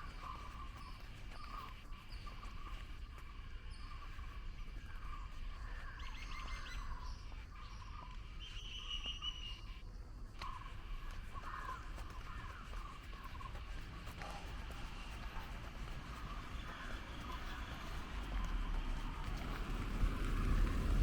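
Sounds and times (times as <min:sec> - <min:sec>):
low outdoor rumble: 0:09.7 - 0:21.0
birds chirping and calling: 0:10.4 - 0:21.0.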